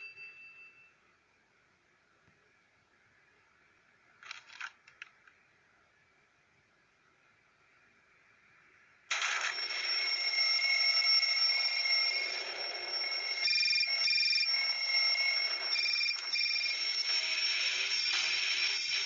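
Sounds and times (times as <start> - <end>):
alarm clock shrill ringing: 9.1 - 19.0
short alarm beeps: 9.1 - 19.0.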